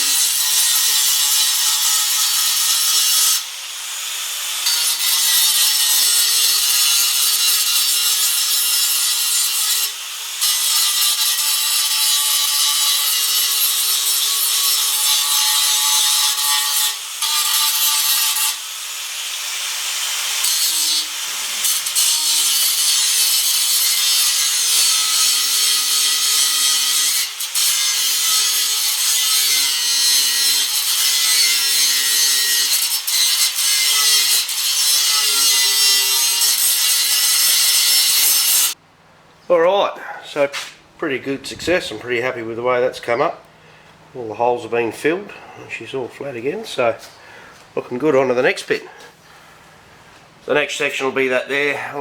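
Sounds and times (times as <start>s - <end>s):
power grinder grinding steel: 0.0s - 38.8s.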